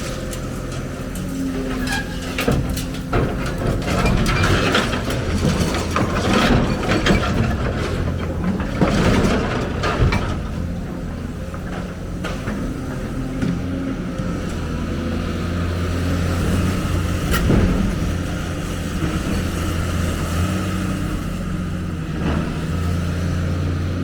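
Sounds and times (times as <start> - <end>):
metallic clanks and rattles: 0.0 - 14.4, 16.2 - 21.0
diesel engine running under load: 0.0 - 24.0.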